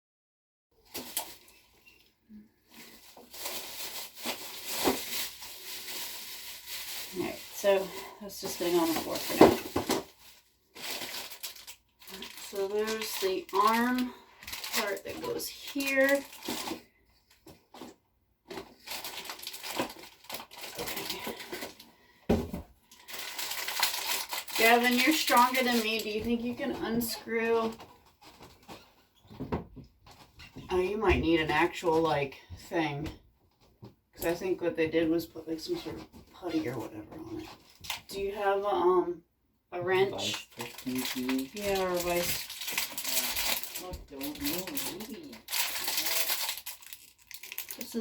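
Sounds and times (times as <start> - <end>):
shower parts rustling and clicking: 2.7 - 21.9, 40.0 - 48.0.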